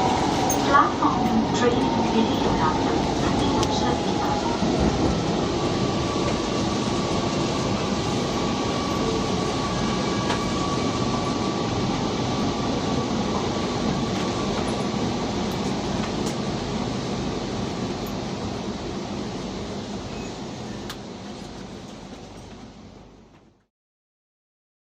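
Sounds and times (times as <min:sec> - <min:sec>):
train rumble and hiss: 0:00.0 - 0:23.6.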